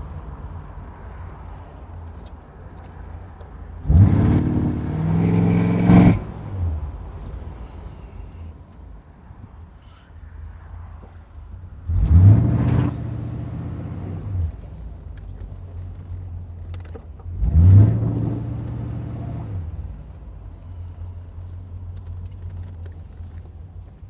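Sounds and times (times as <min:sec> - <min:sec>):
car engine accelerating: 0:01.7 - 0:08.4, 0:11.7 - 0:20.5.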